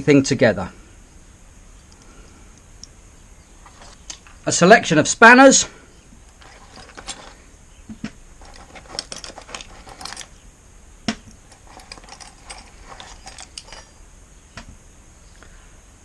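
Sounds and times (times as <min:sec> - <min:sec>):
metal spanners clinking: 0:06.3 - 0:07.4, 0:08.4 - 0:10.4, 0:11.4 - 0:14.0.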